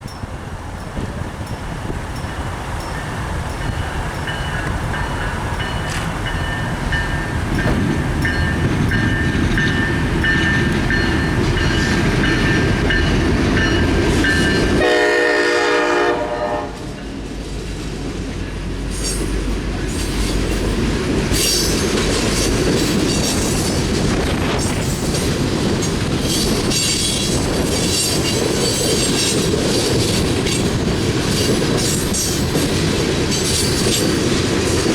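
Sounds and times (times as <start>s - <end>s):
train wheels clattering on rail joints: 0.0s - 15.1s, 16.7s - 34.9s
locomotive horn chord: 14.7s - 17.0s.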